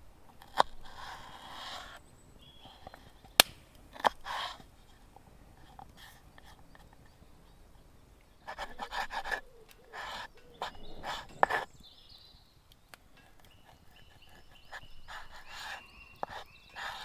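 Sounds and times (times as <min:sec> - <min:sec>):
sharp click: 0:03.4 - 0:03.8
high bird calls: 0:08.4 - 0:17.0.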